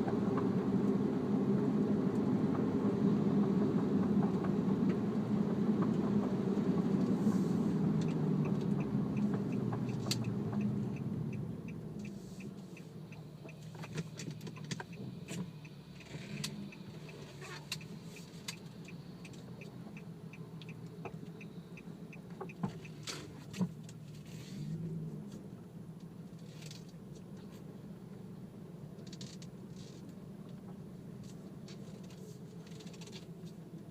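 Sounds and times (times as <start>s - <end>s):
road and drivetrain rumble: 0.0s - 33.9s
faint steady ticking: 8.0s - 24.0s.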